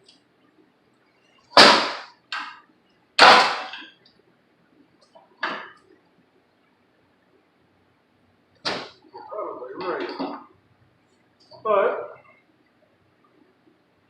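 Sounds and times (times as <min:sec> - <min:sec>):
hammer striking metal: 0:03.2 - 0:03.8.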